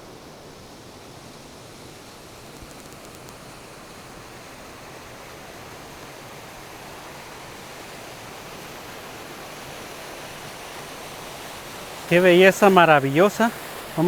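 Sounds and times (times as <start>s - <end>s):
waterfall rushing and splashing: 3.5s - 14.0s.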